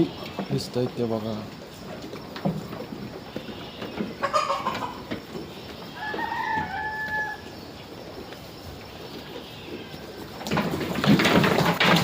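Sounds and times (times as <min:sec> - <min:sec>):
rooster crowing: 0:05.9 - 0:07.6.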